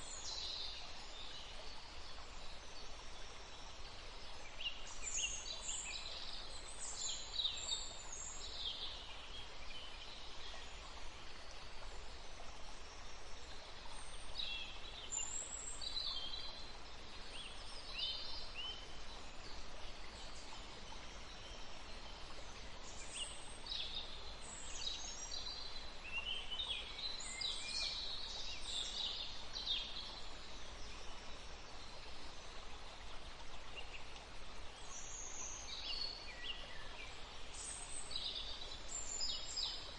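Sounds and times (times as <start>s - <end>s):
river flowing: 0.0s - 39.9s.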